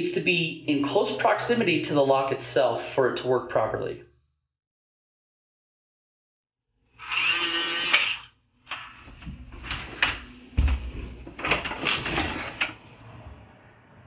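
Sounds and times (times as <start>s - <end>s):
small electric motor whirring: 7.0s - 8.3s.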